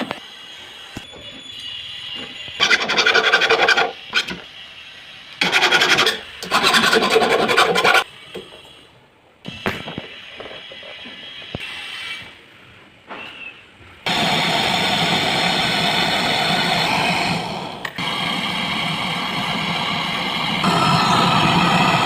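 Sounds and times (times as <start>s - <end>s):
file rasping back and forth: 2.6s - 4.4s, 5.4s - 8.1s.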